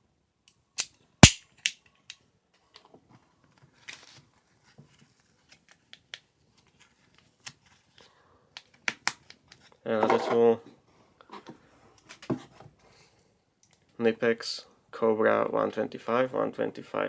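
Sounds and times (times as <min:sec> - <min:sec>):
sharp metallic clicks: 0:01.2 - 0:01.8.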